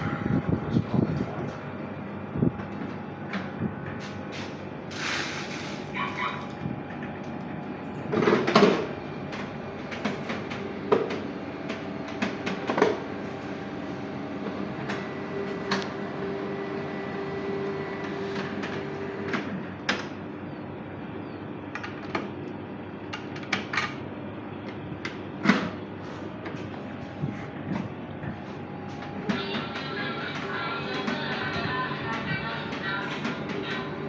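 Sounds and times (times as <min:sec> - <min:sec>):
constant low hum: 0:00.0 - 0:34.0
printer clatter: 0:08.2 - 0:20.1, 0:28.9 - 0:34.0
printer motor whir: 0:08.8 - 0:20.1, 0:26.6 - 0:34.0.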